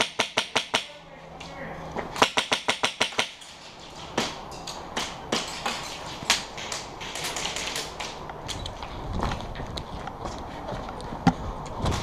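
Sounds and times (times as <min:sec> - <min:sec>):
airsoft rifles firing: 0:00.0 - 0:00.9, 0:02.2 - 0:03.4.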